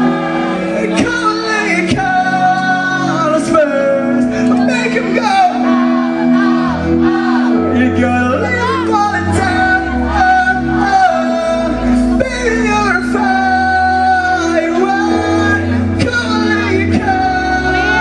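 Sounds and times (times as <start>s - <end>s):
lead vocal singing: 0.0s - 18.0s
pop band playing: 0.0s - 18.0s.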